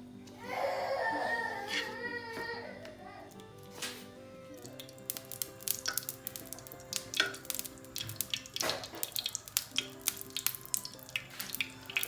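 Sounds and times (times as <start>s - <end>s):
background music with held notes: 0.0s - 12.0s
batter frying in a pan: 3.4s - 12.0s.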